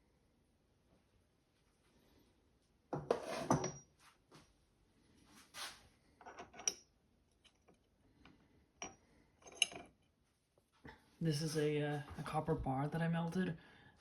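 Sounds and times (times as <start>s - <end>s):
metal clinks and knocks: 8.8s - 9.9s.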